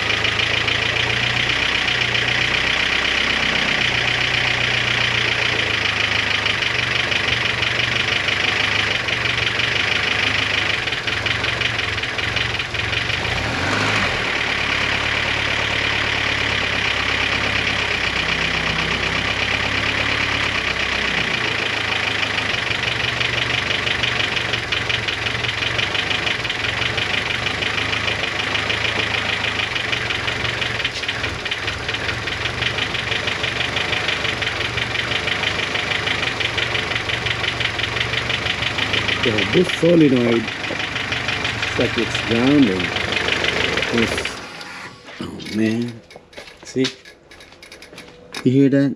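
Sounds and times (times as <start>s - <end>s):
engine idling: 0.0s - 48.8s
rapid engine ticking: 0.0s - 48.8s.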